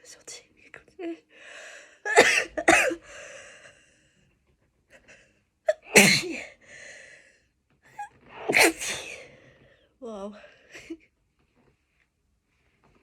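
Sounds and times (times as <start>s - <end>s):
woman sneezing: 5.7s - 6.5s, 8.4s - 9.2s.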